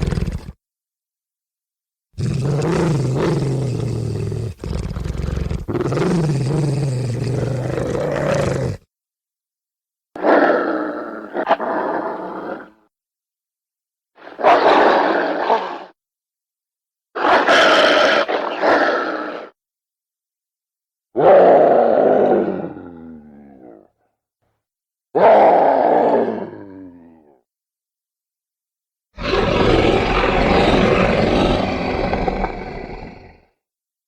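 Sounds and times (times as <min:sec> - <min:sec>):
snarling roars: 0:00.0 - 0:00.6, 0:02.2 - 0:08.9, 0:10.2 - 0:12.8, 0:14.2 - 0:16.0, 0:17.2 - 0:19.6, 0:21.2 - 0:23.9, 0:25.2 - 0:27.4, 0:29.2 - 0:33.5
low wavering growl: 0:29.2 - 0:33.5.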